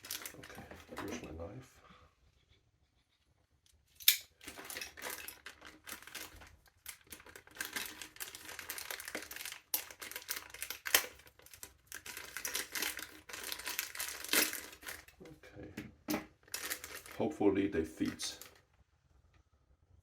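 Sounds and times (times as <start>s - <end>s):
plastic packaging crinkling and tearing: 0.0s - 1.2s, 4.4s - 15.2s, 16.4s - 17.2s.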